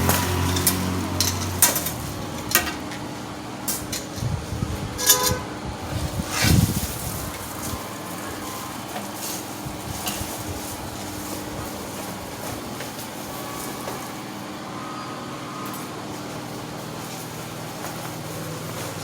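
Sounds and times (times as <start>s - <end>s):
metal parts clinking: 0.1s - 2.8s, 5.0s - 5.4s.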